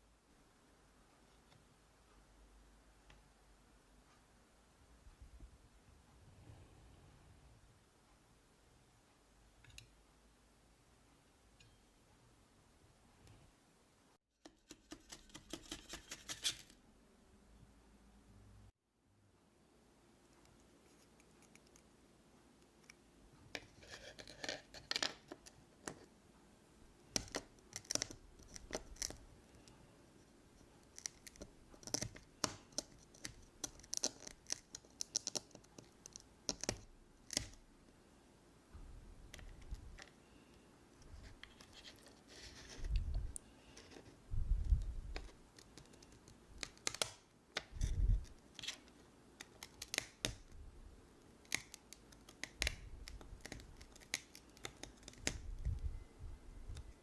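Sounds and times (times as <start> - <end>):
sugar candy cracking and clicking: 27.1 - 29.2, 30.8 - 37.6, 49.4 - 50.6, 51.4 - 55.5.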